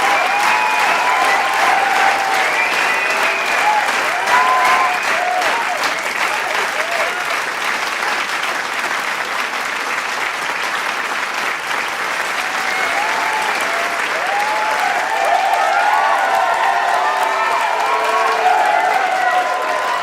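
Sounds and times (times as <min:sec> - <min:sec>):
voices whooping and cheering: 0:00.0 - 0:07.2, 0:12.4 - 0:20.0
crowd applauding: 0:00.0 - 0:20.0.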